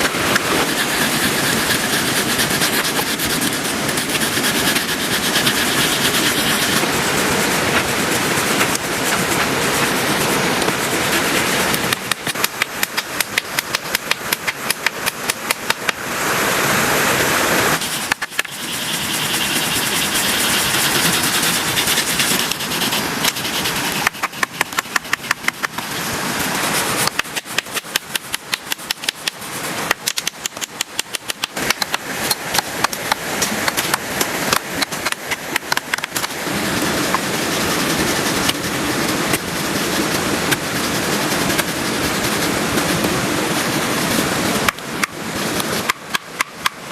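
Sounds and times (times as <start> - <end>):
heavy rain: 0.0 - 30.2, 31.4 - 46.2
rapid sharp knocks: 11.7 - 16.0.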